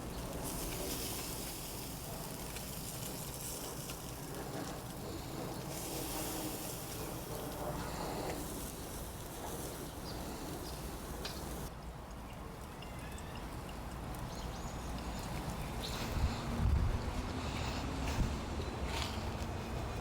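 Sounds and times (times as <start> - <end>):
food sizzling on a grill: 0.0 - 11.7.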